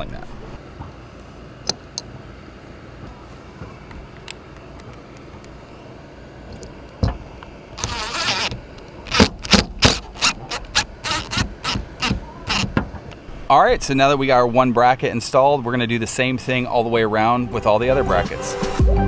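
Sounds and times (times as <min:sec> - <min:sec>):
sharp knocks: 0:09.2 - 0:13.1.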